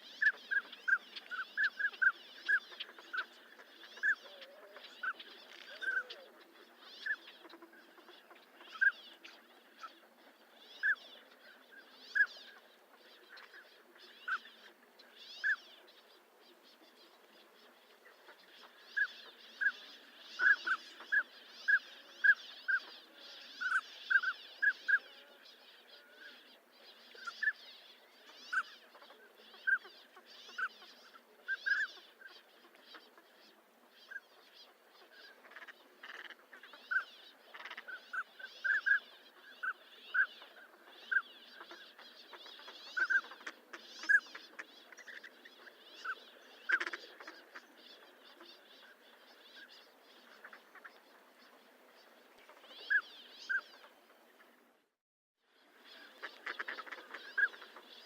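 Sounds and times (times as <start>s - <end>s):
faint background hiss: 0.0s - 54.9s, 55.5s - 58.0s.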